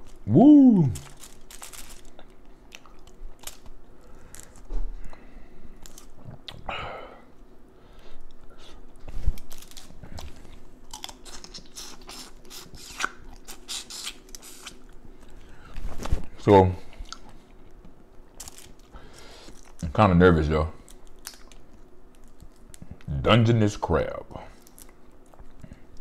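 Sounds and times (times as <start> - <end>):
person chewing: 0.1 - 5.2, 5.8 - 6.7, 8.2 - 15.6, 16.9 - 19.8.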